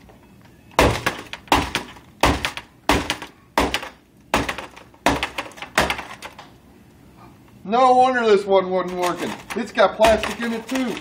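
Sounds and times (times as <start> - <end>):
laptop being smashed: 0.7 - 6.6, 8.9 - 11.0
plastic and glass breaking: 0.8 - 6.4, 8.9 - 11.0.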